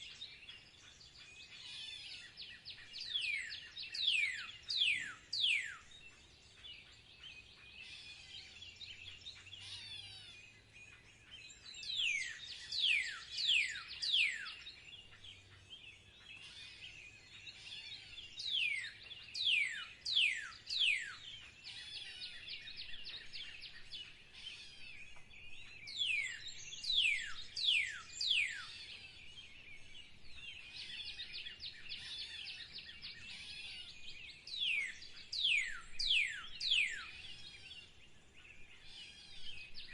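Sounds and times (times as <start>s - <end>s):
songbird singing: 0.0s - 39.9s.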